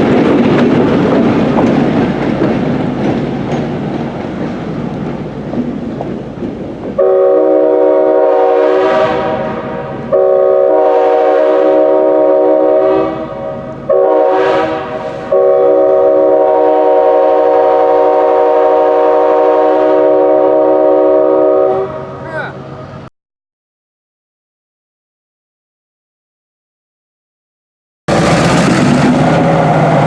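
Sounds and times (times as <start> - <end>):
train air horn blasts: 7.0 - 22.2.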